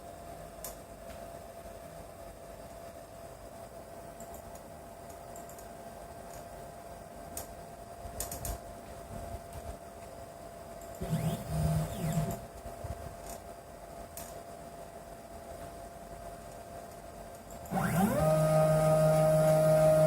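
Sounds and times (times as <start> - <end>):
cnc router humming: 11.0 - 12.5, 17.7 - 20.0
motor noise gliding in pitch: 11.0 - 12.5, 17.7 - 20.0.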